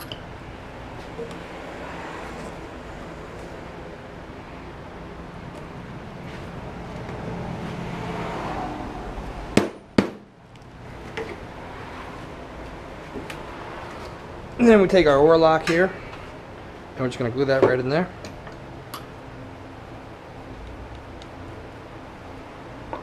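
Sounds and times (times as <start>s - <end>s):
sharp knocks: 9.5s - 10.3s.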